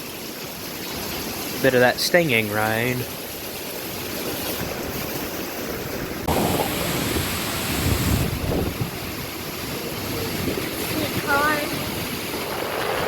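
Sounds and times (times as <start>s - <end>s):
driving rain: 0.0s - 13.0s
wind buffeting microphone: 4.5s - 13.0s
wind gusting: 4.5s - 13.0s.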